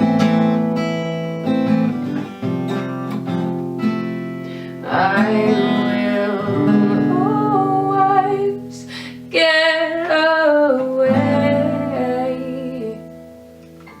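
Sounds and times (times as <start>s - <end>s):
acoustic guitar: 0.0s - 14.0s
person singing: 4.7s - 13.1s.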